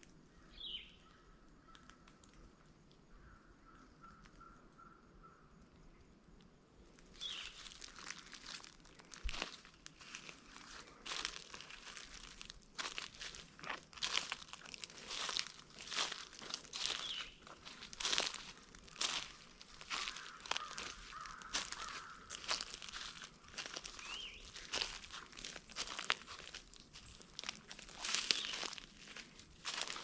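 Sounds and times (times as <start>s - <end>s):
faint woodland background: 0.0s - 30.0s
footsteps crunching dry leaves: 7.1s - 30.0s.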